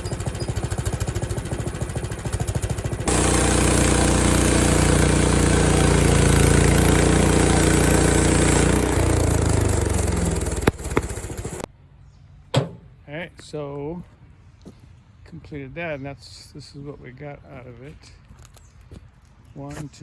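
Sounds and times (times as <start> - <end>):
bandsaw mill engine cutting log: 0.0 - 11.7
sharp knocks: 12.6 - 13.0.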